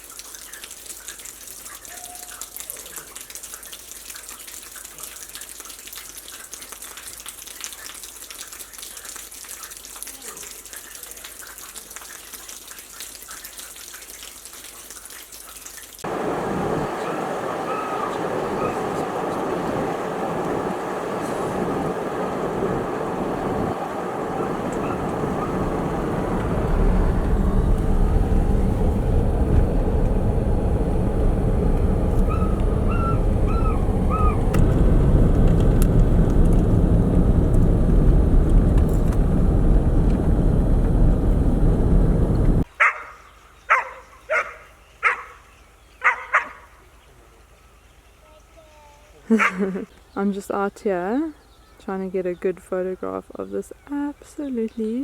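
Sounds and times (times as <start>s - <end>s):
rushing noise with low rumble: 16.0s - 42.7s
dog barking: 17.0s - 18.9s, 24.7s - 25.6s, 42.8s - 45.4s, 46.0s - 46.7s, 49.4s - 49.6s.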